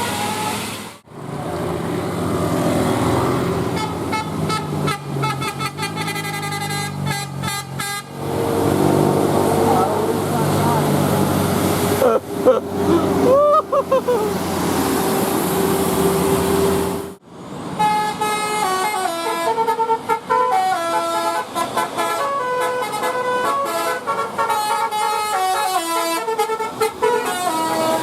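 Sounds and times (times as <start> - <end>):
multi-tone bus horn tune: 0.0 - 0.8, 3.6 - 8.3, 17.8 - 28.0.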